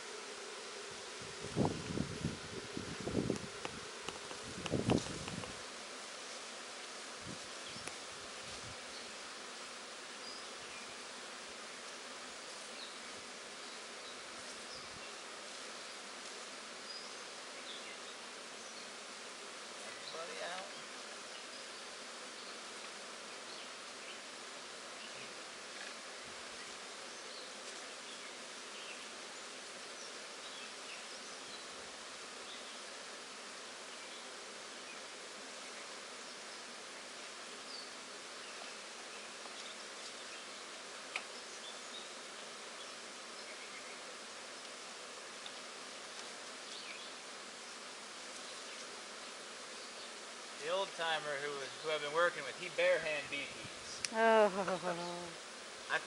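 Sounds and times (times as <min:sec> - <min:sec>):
bee swarm buzzing: 0:00.0 - 0:56.0
small click: 0:41.1 - 0:41.3.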